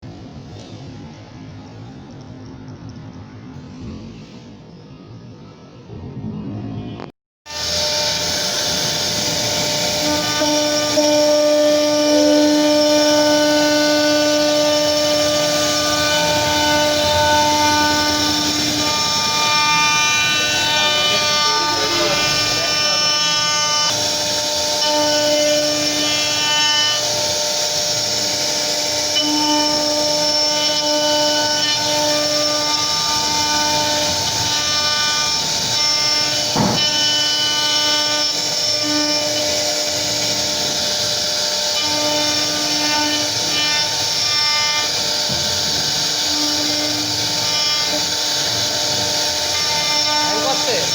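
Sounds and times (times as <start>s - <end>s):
bit carving wood: 7.5s - 50.9s
router spindle whining: 7.5s - 50.9s
hiss of cutting wood: 35.2s - 50.9s.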